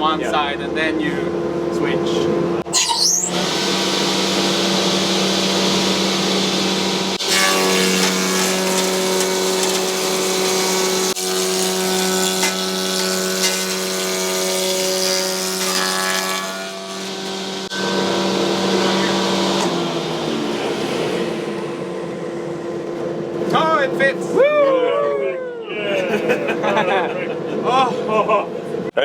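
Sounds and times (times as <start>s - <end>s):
cutter heads planing a board: 3.0s - 22.5s
planer motor hum: 3.3s - 23.6s.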